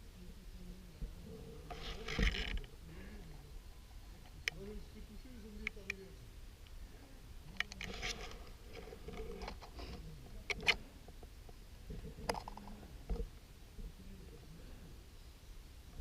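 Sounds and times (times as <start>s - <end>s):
rustling: 1.1s - 13.4s.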